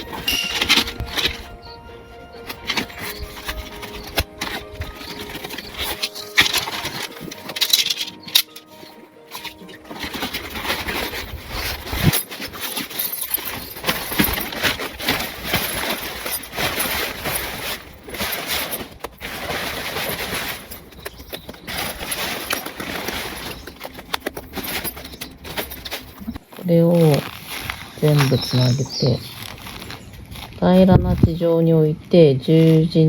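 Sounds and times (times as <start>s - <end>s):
camping gear rustling and clattering: 0.0s - 33.0s.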